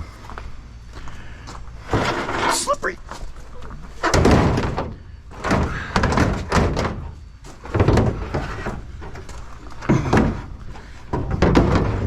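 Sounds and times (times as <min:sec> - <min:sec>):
scrap metal thudding and knocking: 0:03.9 - 0:12.0.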